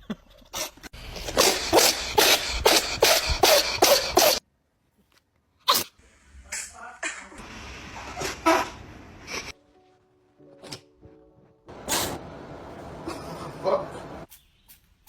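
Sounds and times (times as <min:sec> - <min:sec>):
cat sneezing: 0:01.2 - 0:04.4, 0:05.6 - 0:06.0, 0:11.8 - 0:12.2.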